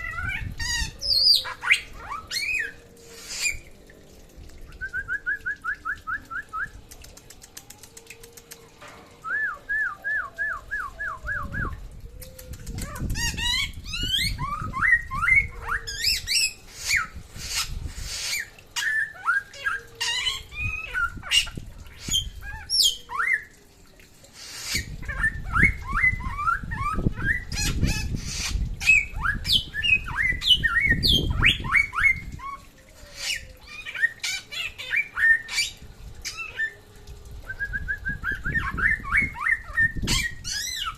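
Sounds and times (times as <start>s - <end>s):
songbird singing trills and whistles: 9.2s - 23.6s, 24.4s - 36.8s, 37.4s - 40.9s.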